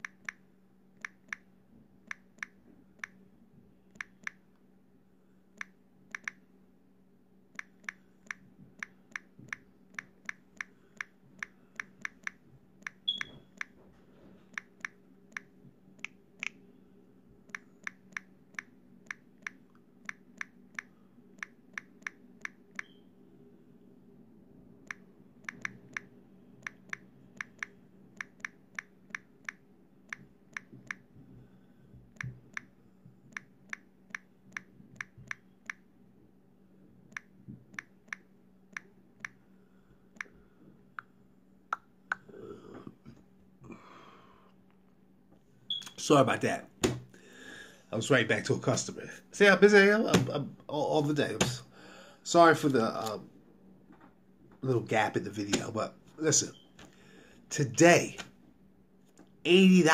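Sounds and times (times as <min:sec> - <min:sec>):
faint steady low hum: 0:00.0 - 0:59.9
rapid sharp clicks: 0:07.5 - 0:13.0, 0:24.8 - 0:31.1.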